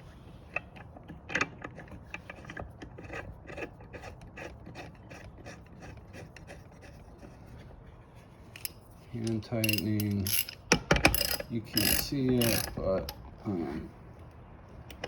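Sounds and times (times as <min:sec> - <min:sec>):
ratchet wrench clicking: 0:08.6 - 0:13.2.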